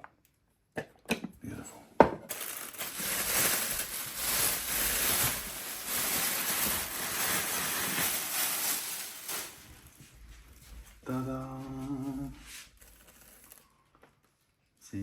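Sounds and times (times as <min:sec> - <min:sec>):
packaging rustling: 0:02.3 - 0:10.0, 0:12.7 - 0:14.3.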